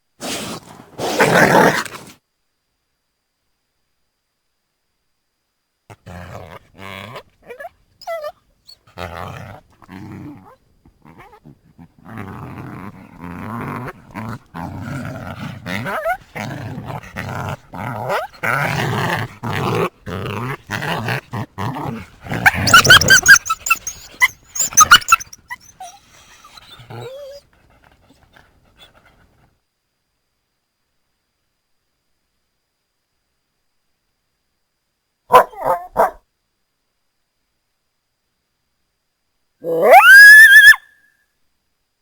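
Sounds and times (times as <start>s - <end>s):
coyote growling and snarling: 0.2s - 2.2s, 5.9s - 29.4s
coyote high-pitched yelps: 22.4s - 26.3s, 39.6s - 41.1s.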